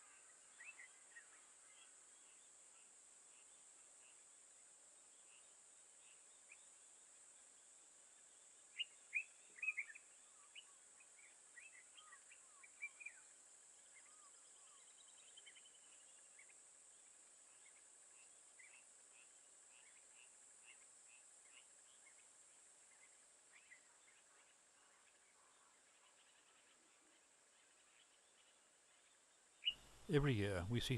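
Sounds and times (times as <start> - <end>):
faint high hiss: 0.0 - 30.9
birds chirping: 29.6 - 30.9.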